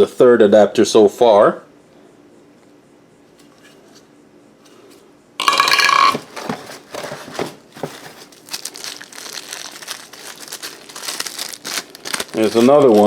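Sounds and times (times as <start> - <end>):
plastic packaging rustling: 5.4 - 13.0.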